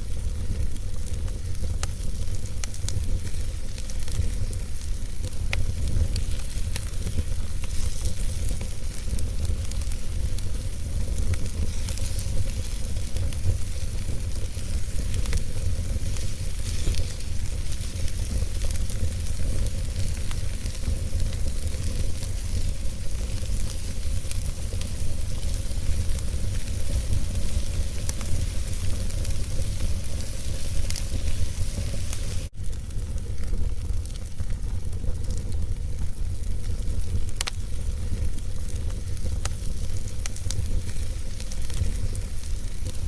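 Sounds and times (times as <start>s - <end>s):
fire hiss: 0.0s - 43.0s
wood fire crackling and popping: 0.0s - 43.0s.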